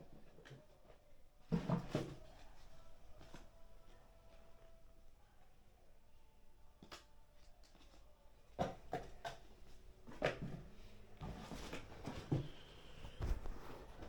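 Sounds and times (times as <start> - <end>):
rustling: 9.7 - 14.0.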